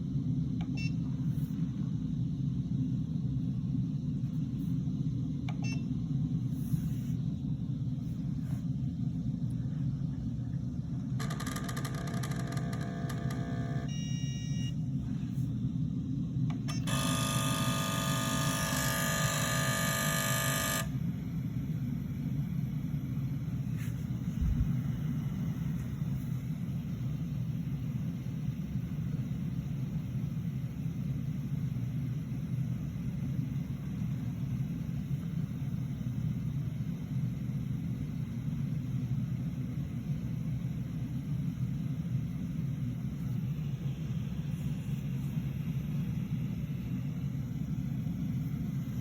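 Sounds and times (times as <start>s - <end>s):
loud ringing tone: 11.1s - 14.8s, 16.7s - 21.1s.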